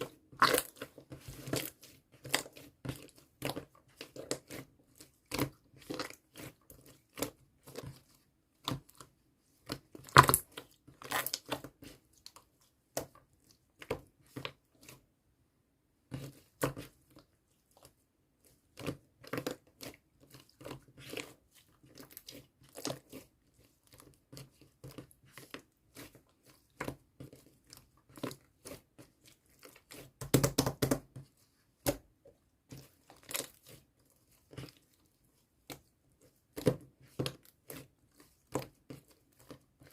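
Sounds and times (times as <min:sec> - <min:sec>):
slime squished by hand: 0:00.0 - 0:15.0.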